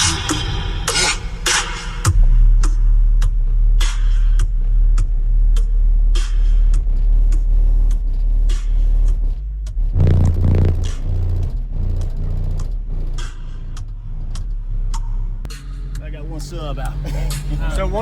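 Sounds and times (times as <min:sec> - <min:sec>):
bass-heavy music through subwoofers: 0:00.0 - 0:18.0.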